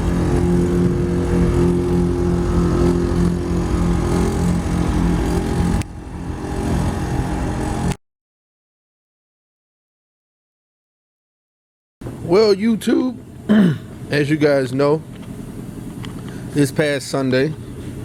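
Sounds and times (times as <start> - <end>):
pickup truck engine running: 0.0 - 8.0.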